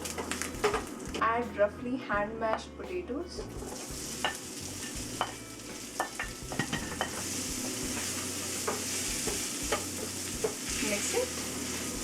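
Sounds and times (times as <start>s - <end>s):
potatoes sizzling in a pan: 0.0s - 1.2s, 3.6s - 12.0s.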